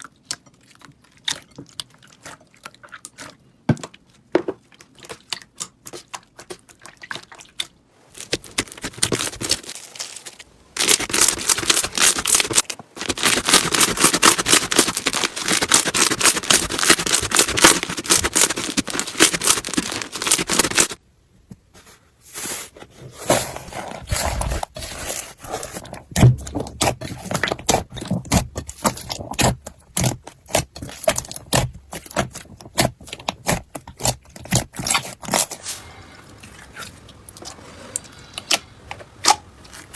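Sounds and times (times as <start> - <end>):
slime crackling and popping: 8.2 - 21.0, 26.0 - 35.4.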